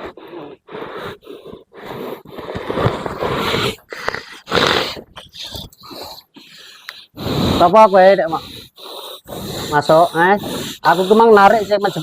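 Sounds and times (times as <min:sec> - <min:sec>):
person growling and rasping: 0:00.0 - 0:12.0.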